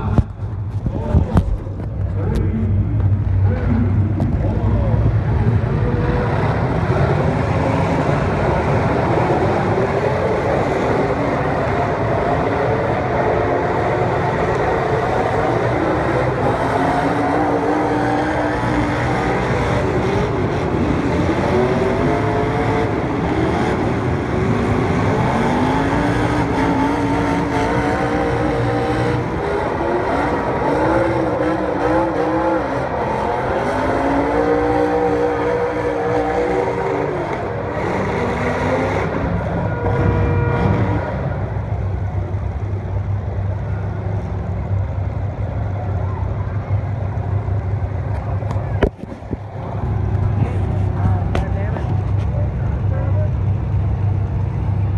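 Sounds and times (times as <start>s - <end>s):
racing car engines revving: 0.0s - 54.9s.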